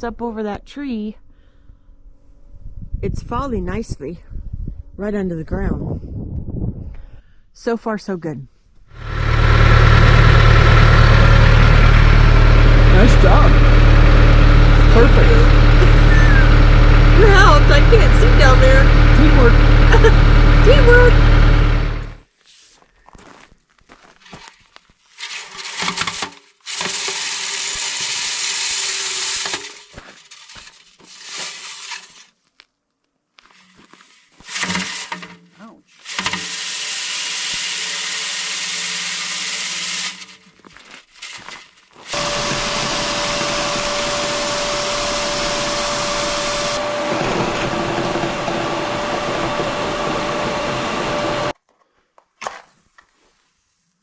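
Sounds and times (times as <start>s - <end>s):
electric motor tool running: 8.9s - 22.2s, 25.8s - 32.2s, 36.0s - 40.4s, 41.3s - 51.5s
clatter: 25.2s - 32.3s, 33.5s - 35.4s, 36.0s - 51.5s.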